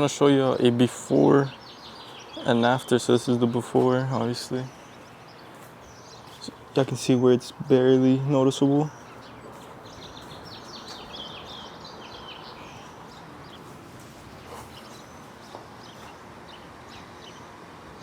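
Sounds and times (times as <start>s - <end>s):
small birds chirping: 0.0s - 18.0s
steady background hiss: 0.0s - 18.0s.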